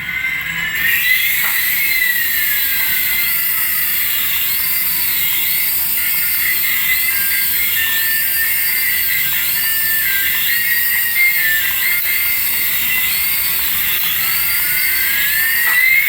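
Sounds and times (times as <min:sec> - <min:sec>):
toy electronic warbling: 0:00.0 - 0:16.0.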